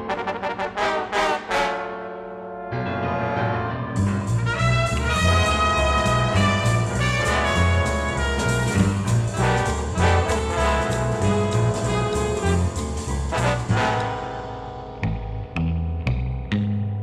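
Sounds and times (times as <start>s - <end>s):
brass instruments playing melody: 0.0s - 14.8s
walking bass line: 4.0s - 17.0s.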